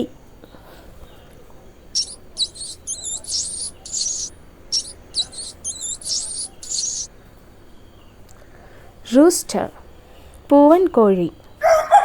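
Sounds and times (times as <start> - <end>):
rat squeaking and chirping: 2.0 - 7.1.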